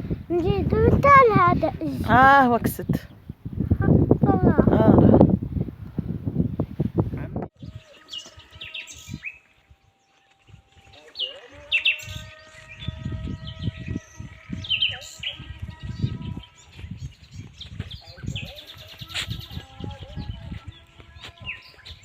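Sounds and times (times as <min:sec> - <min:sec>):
small birds chirping: 0:00.0 - 0:04.9, 0:07.6 - 0:22.0
low rumbling on microphone: 0:00.0 - 0:07.8, 0:12.1 - 0:18.6, 0:19.2 - 0:21.6.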